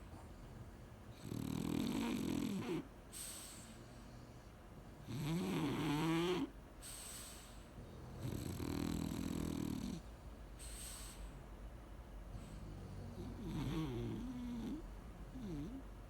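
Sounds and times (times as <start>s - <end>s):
dog snoring: 0.0s - 2.9s, 3.6s - 6.6s, 7.8s - 10.1s, 12.3s - 15.9s.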